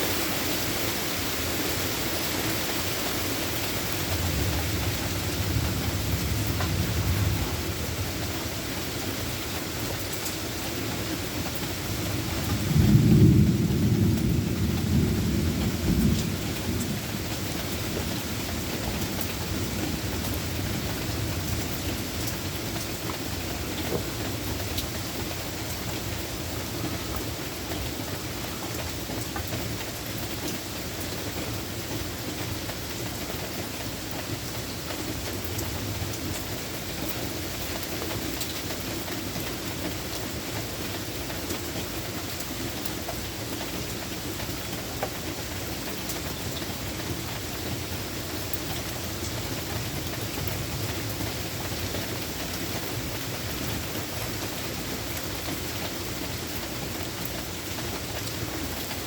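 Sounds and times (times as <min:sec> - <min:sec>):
steady rain falling: 0:00.0 - 0:59.0
thunder rumbling: 0:04.0 - 0:08.8, 0:12.4 - 0:22.6.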